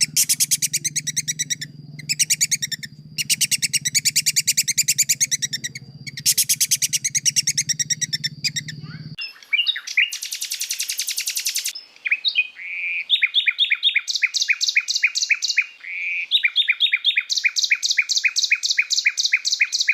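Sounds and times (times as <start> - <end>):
low hum: 0.0 - 9.2
songbird trills: 0.0 - 19.9.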